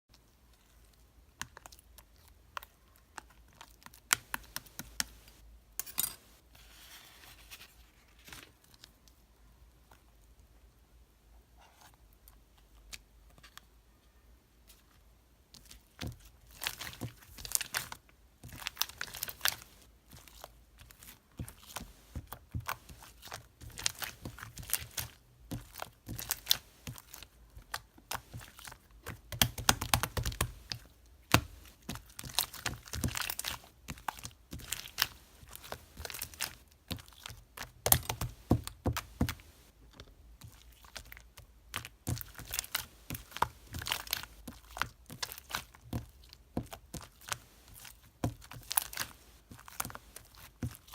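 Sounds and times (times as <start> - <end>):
crinkling and crackling handling: 14.7 - 50.9.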